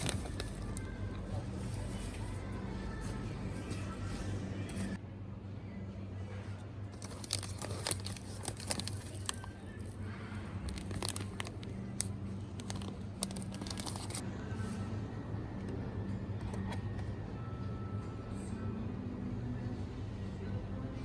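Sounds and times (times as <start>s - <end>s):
packaging crinkling: 0.0s - 2.0s, 7.0s - 14.2s.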